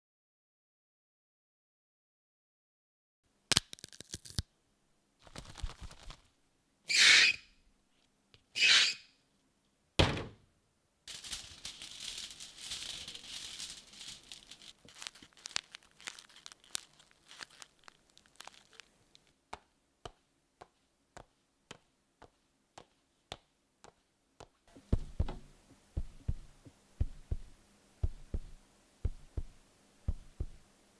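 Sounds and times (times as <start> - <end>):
crinkling or tearing noise: 3.5 - 4.5, 5.2 - 6.3, 11.1 - 19.4
low thuds: 24.8 - 30.6
low thump: 24.9 - 30.6.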